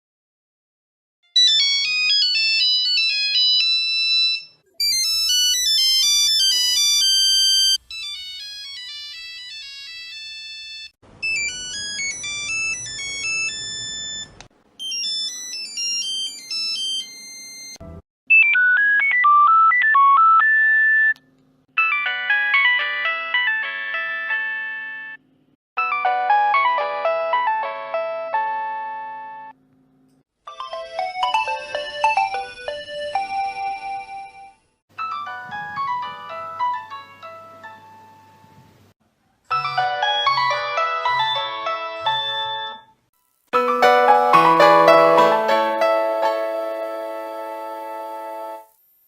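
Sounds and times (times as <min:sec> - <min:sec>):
mobile phone ringtones: 0:01.4 - 0:17.8, 0:43.6 - 0:48.7.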